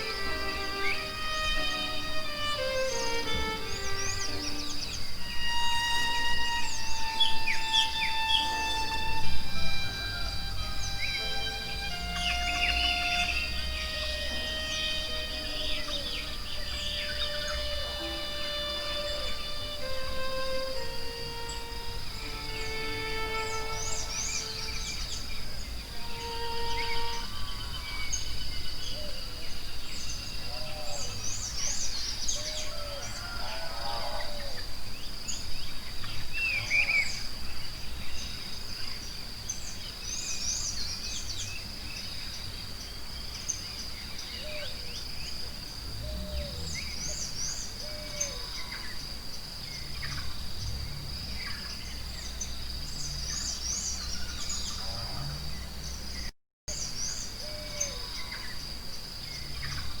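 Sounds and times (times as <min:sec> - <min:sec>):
high-pitched insect drone: 0:00.0 - 0:28.5
birds chirping and calling: 0:00.0 - 0:34.6.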